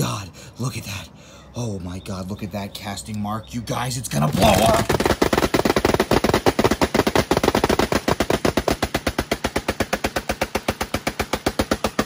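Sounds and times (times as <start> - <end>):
automatic gunfire: 4.3 - 12.0.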